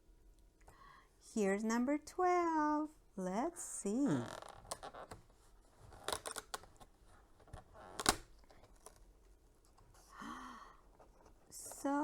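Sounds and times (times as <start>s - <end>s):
cardboard rustling: 4.6s - 10.1s.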